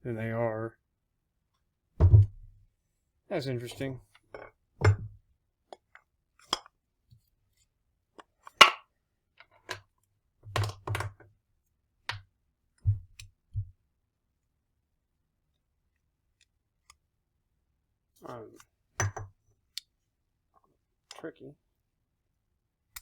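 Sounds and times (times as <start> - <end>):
low thuds: 2.0 - 2.5, 12.9 - 13.7.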